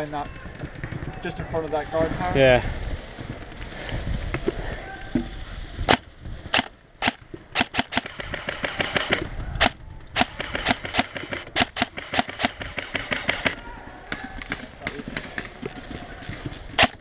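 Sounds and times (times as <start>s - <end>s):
airsoft guns firing: 5.9s - 17.0s.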